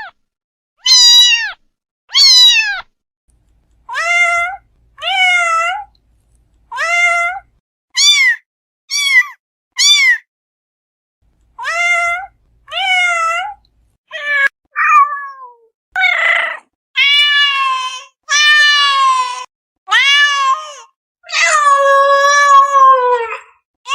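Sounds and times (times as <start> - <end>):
cat meowing: 0.8 - 2.9, 3.9 - 5.9, 6.7 - 10.3, 11.6 - 19.1, 19.9 - 23.2.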